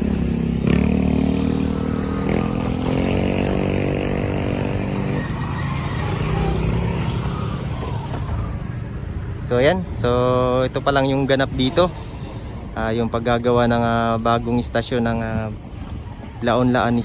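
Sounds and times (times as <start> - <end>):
nearby vehicle engine running: 0.0 - 9.4
street traffic: 0.0 - 17.0.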